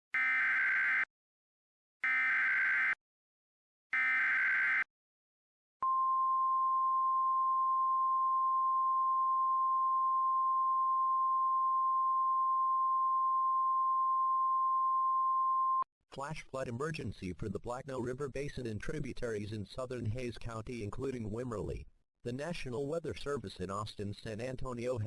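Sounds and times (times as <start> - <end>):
steady warning alarm tone: 0.2 - 1.1, 2.0 - 3.0, 4.0 - 4.9.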